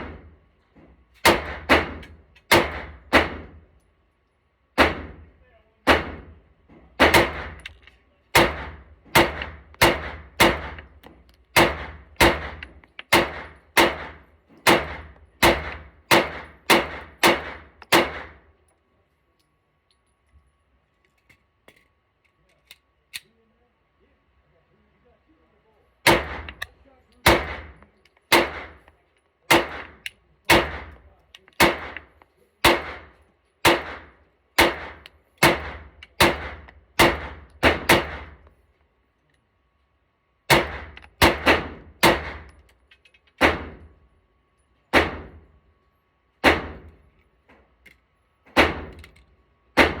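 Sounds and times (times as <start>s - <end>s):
pistol shots echoing: 7.0s - 7.7s, 8.4s - 11.0s, 11.6s - 18.4s, 26.0s - 28.9s, 29.5s - 31.0s, 31.6s - 38.4s, 40.5s - 42.5s, 46.4s - 46.9s, 49.8s - 50.0s.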